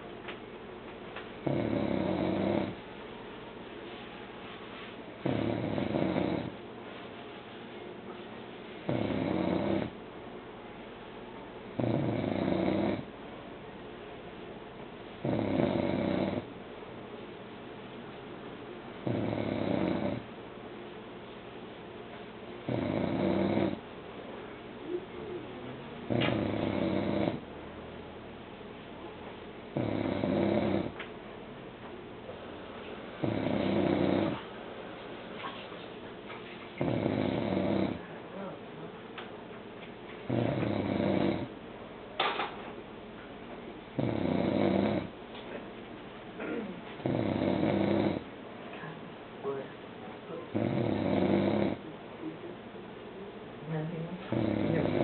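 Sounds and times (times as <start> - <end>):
man snoring: 1.4 - 2.8, 5.2 - 6.5, 8.9 - 10.0, 11.8 - 13.1, 15.2 - 16.5, 19.0 - 20.2, 22.7 - 23.8, 26.1 - 27.4, 29.8 - 31.0, 33.2 - 34.4, 36.8 - 38.0, 40.3 - 41.5, 44.0 - 45.1, 47.0 - 48.2, 50.5 - 51.8, 54.3 - 55.0.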